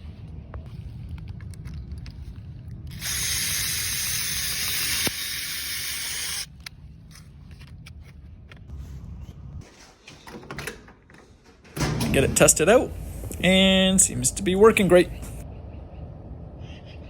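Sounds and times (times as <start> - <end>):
gas spray hiss: 3.0 - 6.5
low rumble: 11.8 - 17.0.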